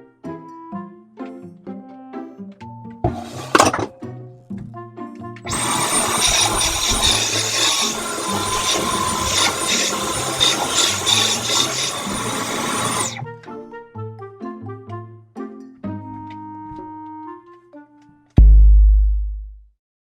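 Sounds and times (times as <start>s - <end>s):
cordless vacuum whining: 3.1s - 3.9s, 5.5s - 13.4s.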